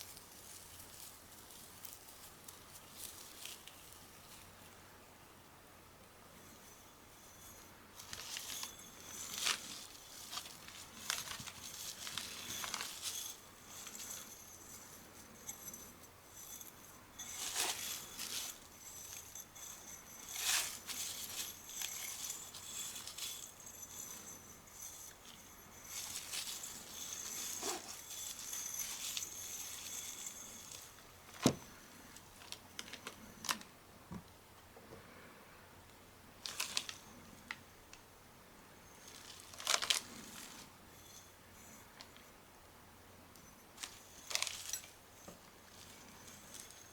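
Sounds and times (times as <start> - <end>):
metal parts clinking: 7.3 - 31.8, 43.8 - 46.9
packing material crinkling: 8.1 - 14.2.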